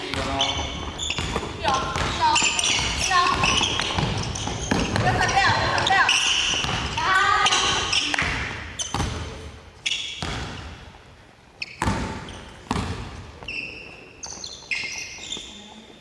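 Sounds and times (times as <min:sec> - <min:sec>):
basketballs bouncing on hardwood: 0:00.0 - 0:09.4, 0:10.2 - 0:10.7, 0:11.8 - 0:13.3
sneaker squeaks: 0:00.0 - 0:10.9, 0:11.5 - 0:16.0.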